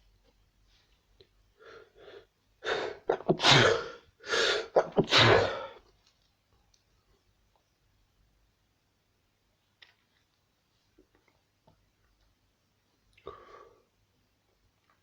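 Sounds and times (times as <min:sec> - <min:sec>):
person sneezing: 0:02.6 - 0:05.8.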